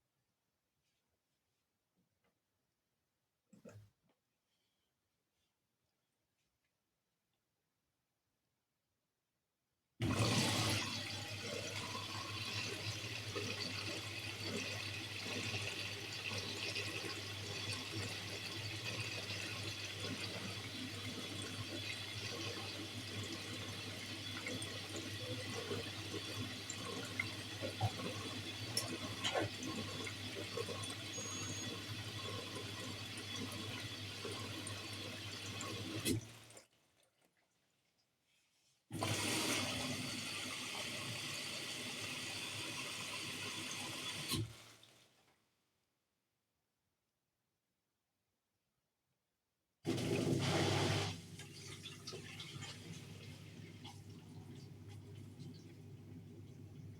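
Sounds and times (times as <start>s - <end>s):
washing machine low hum: 10.0s - 36.6s, 49.9s - 56.9s
washing machine water rushing: 10.0s - 37.2s, 38.9s - 45.2s, 49.9s - 56.9s.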